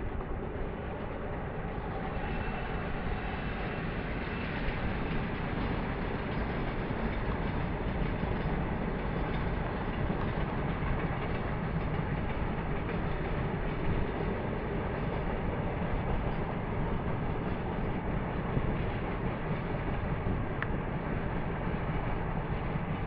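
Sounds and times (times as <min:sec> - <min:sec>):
train wheels running on rails: 0:00.0 - 0:23.0.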